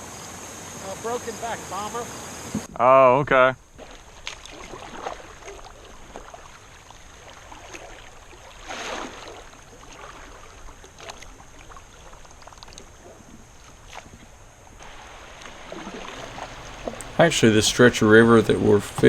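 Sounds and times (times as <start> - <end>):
water lapping against kayak hull: 3.7 - 19.0
rush of water: 3.8 - 19.0
small knocks: 16.2 - 17.4.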